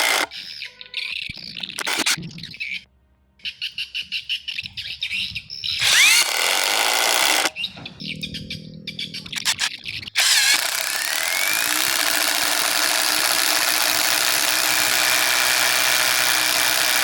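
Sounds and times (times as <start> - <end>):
impact driver rattling: 5.8 - 7.5, 10.2 - 17.0
motor whine: 5.8 - 7.5, 8.1 - 17.0.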